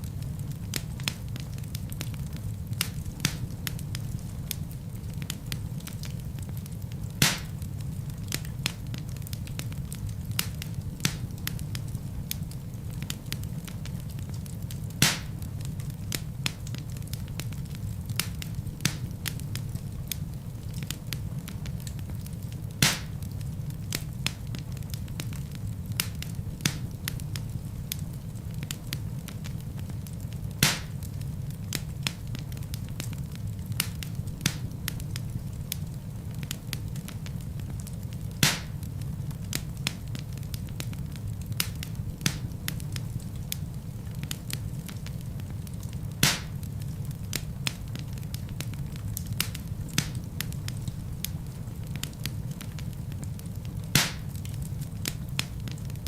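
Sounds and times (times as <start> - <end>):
fire crackling: 0.0 - 56.0
fire flames rumbling: 0.0 - 56.0
log popping: 7.2 - 7.7, 15.0 - 15.3, 22.8 - 23.4, 30.6 - 31.0, 38.4 - 38.9, 46.2 - 46.6, 53.9 - 54.7.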